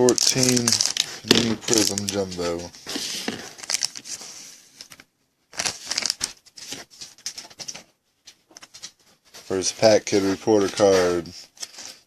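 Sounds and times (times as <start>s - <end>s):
foil wrapper crinkling: 0.0s - 4.2s, 4.8s - 7.6s.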